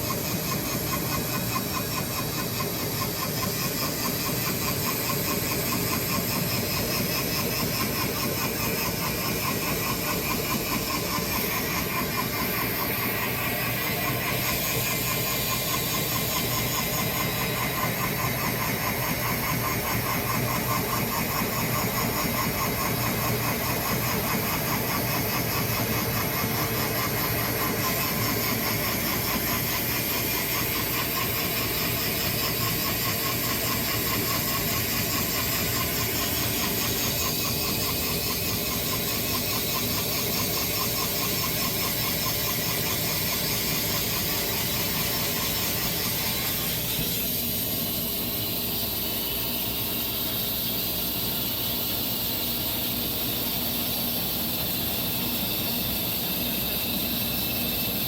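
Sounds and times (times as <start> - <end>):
sawmill engine running: 0.0 - 58.0.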